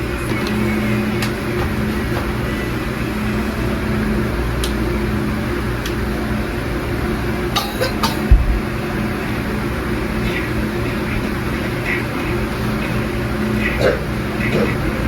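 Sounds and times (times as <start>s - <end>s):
machine hum: 0.0s - 15.0s
loud deep thump: 8.3s - 8.8s.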